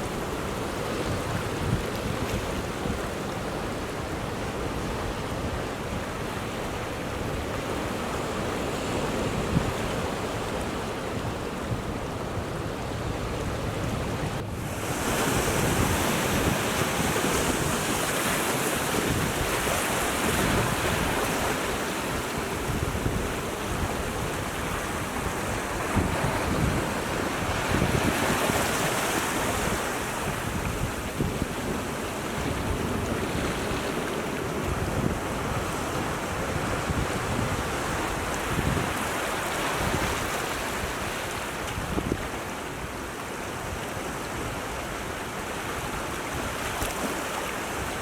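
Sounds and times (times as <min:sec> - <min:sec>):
surf washing against rocks: 0:00.0 - 0:48.0
wind buffeting microphone: 0:13.1 - 0:41.0, 0:41.6 - 0:43.0.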